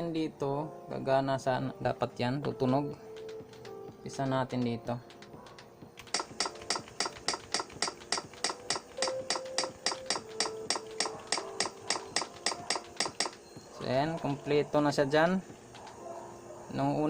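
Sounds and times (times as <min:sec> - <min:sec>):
keyboard keys pressed: 0:02.5 - 0:14.4
keyboard tester short sounds: 0:06.0 - 0:13.4.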